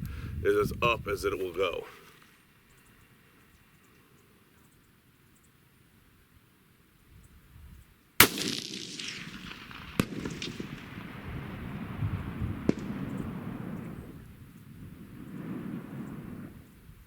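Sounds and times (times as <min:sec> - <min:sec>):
faint sharp cracks: 0:08.2 - 0:11.4, 0:12.6 - 0:13.9
rifle shot with rolling echo: 0:08.2 - 0:14.2.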